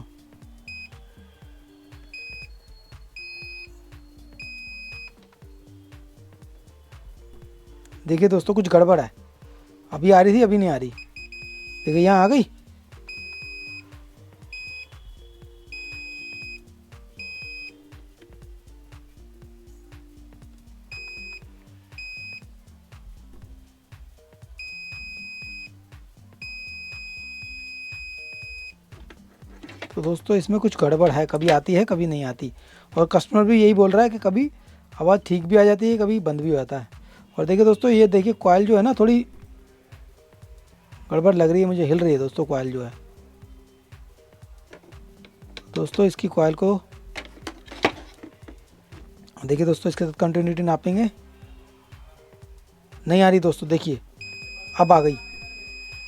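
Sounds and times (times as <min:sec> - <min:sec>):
multimeter continuity buzzer beeping: 0:00.0 - 0:06.2, 0:10.9 - 0:18.2, 0:20.9 - 0:22.6, 0:24.5 - 0:25.8, 0:26.4 - 0:29.3, 0:54.2 - 0:56.0
soft background music: 0:00.0 - 0:56.0.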